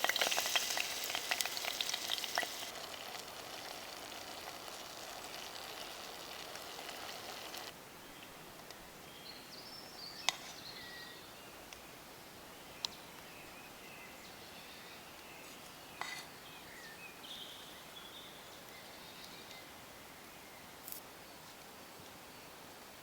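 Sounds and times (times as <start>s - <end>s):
steady hiss: 0.0s - 8.6s
bird chirps: 9.1s - 11.4s.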